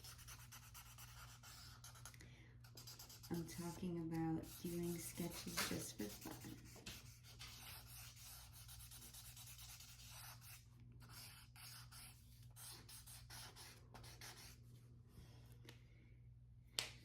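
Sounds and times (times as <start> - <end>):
drawing tool scratching paper: 0.0 - 2.1, 4.4 - 14.5
low steady hum: 0.0 - 17.0.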